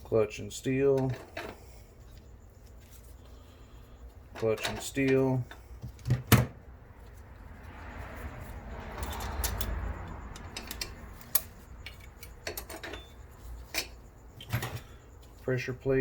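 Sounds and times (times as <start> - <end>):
soft shuffling: 1.8 - 4.3, 13.2 - 16.0.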